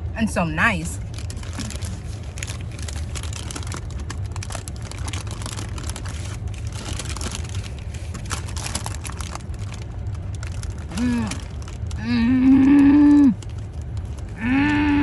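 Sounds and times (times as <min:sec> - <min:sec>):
steady low hum: 0:00.0 - 0:15.0
wrapper crinkling: 0:01.0 - 0:14.4
sandwich being chewed crunchily: 0:01.0 - 0:15.0.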